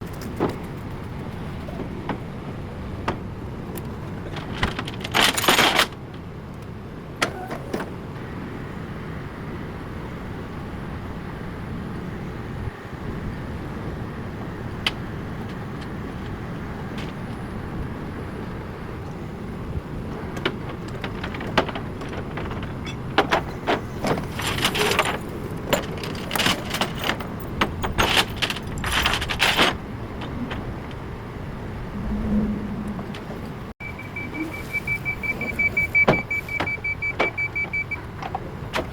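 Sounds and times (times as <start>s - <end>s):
metallic clanks and rattles: 20.2s - 31.0s.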